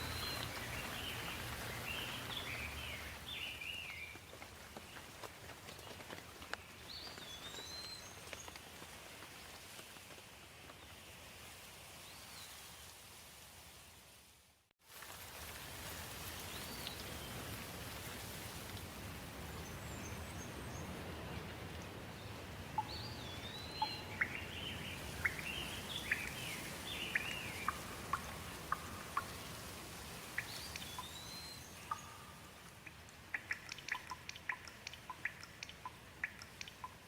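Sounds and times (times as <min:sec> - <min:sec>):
songbirds calling: 0:00.0 - 0:05.1, 0:21.8 - 0:29.5, 0:30.2 - 0:37.0
steady rain: 0:00.0 - 0:37.0
sharp water drips: 0:22.8 - 0:37.0.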